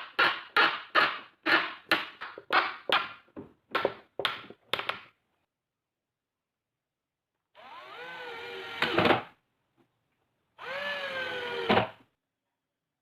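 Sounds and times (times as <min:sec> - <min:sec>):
power tool motor whine: 0:07.6 - 0:09.0.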